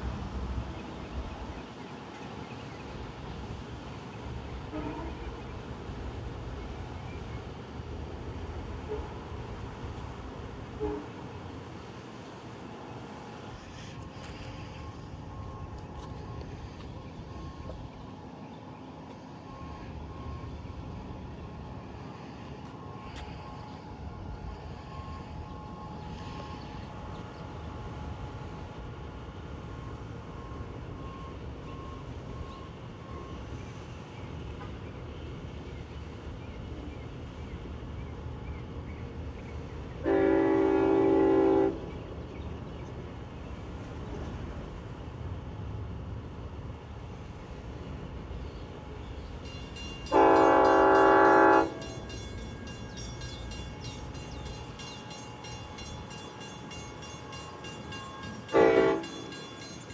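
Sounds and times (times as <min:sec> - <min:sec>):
train rumbling: 0:00.0 - 0:59.9
train horn blast: 0:04.6 - 0:05.3, 0:08.8 - 0:09.3, 0:10.7 - 0:11.4, 0:40.0 - 0:42.0, 0:50.1 - 0:52.0, 0:58.2 - 0:59.3.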